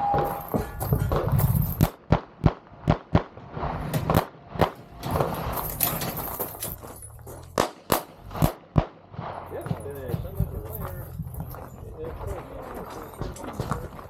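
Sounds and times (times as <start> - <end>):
pistol shots: 0.0 - 5.6, 7.5 - 9.9.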